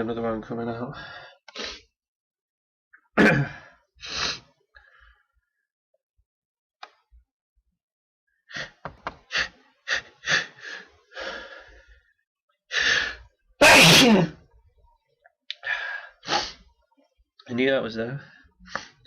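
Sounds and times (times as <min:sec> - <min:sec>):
person sneezing: 0:13.6 - 0:14.4.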